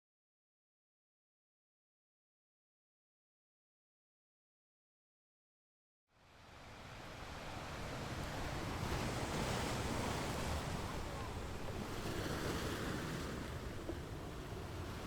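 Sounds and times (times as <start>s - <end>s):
wind: 6.1s - 15.0s
surf washing on shore: 6.3s - 15.0s.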